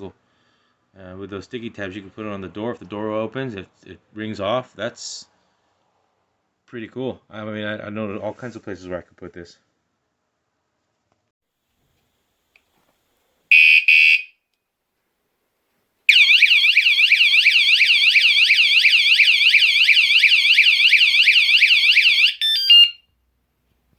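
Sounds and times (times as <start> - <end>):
short loud alarm beeps: 13.5 - 14.3, 16.1 - 23.0
short stepped alarm tones: 13.5 - 14.3, 16.1 - 23.0
rapidly warbling alarm siren: 16.1 - 23.0.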